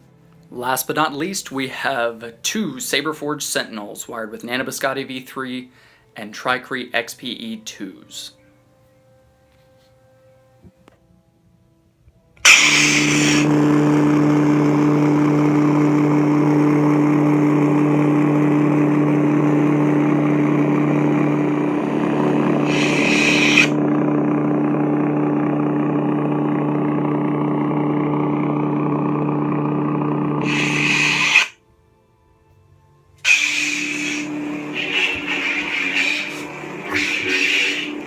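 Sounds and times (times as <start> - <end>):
low electric hum: 10.0 - 38.0
lightsaber deactivation: 12.4 - 13.6, 22.4 - 23.8, 30.4 - 31.5, 33.3 - 38.0
short bright burst: 12.4 - 13.6, 22.6 - 23.8, 30.4 - 31.6, 33.2 - 38.0
lightsaber ignition: 12.4 - 16.8, 19.6 - 23.8, 30.4 - 31.6, 33.2 - 38.0.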